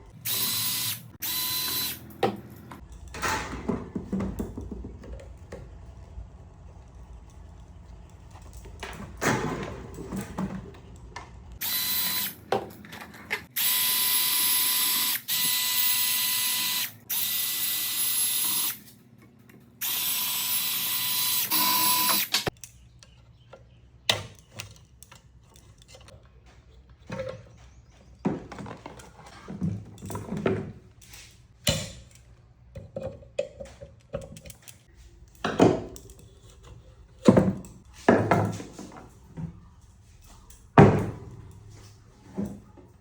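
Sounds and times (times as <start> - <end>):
metal fan parts clicking and scraping: 22.5 - 27.7.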